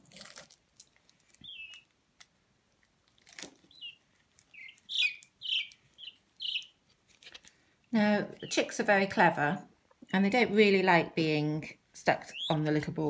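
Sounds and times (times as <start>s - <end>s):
pea chick peeping: 1.4s - 2.0s, 3.6s - 6.9s, 8.2s - 8.9s, 12.1s - 12.9s
brief crackle: 3.0s - 6.0s.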